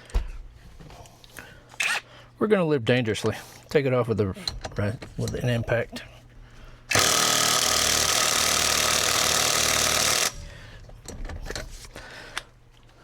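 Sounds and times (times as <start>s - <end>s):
tool-handling clicks: 4.4s - 5.6s
impact wrench hammering: 6.9s - 11.7s.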